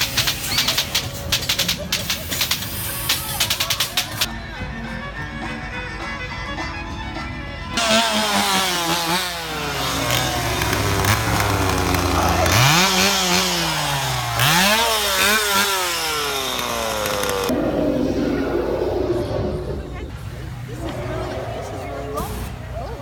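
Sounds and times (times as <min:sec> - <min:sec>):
chainsaw engine revving: 0:07.8 - 0:17.6.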